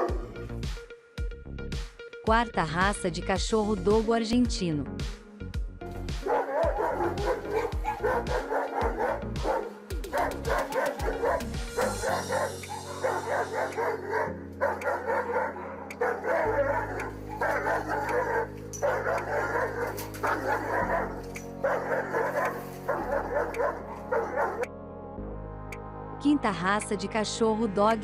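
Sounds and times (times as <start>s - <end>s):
background music: 0.0s - 28.0s
dog barking deeply: 6.2s - 24.7s.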